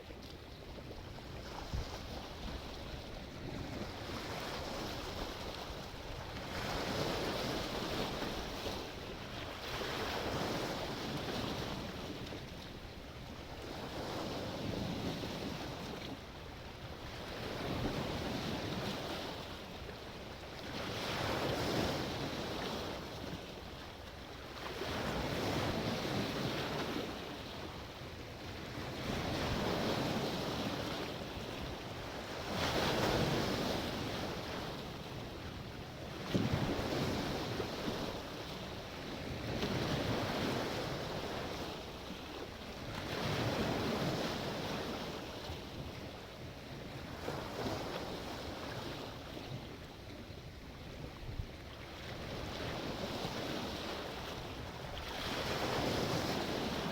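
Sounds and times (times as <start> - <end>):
waves breaking: 51.2 - 56.9.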